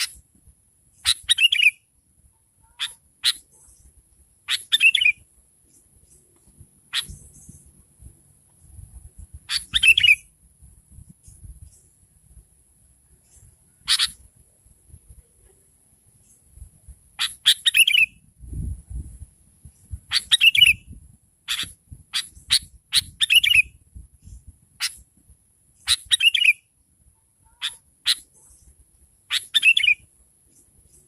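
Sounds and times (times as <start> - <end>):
bird calling: 2.6 - 3.9, 6.9 - 7.6, 13.3 - 14.2, 27.4 - 28.6, 29.3 - 30.0.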